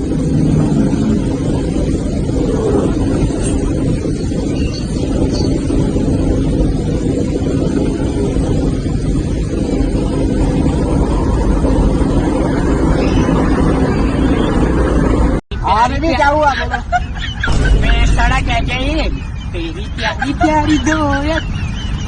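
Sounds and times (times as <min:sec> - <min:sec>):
engine droning: 0:00.0 - 0:22.0.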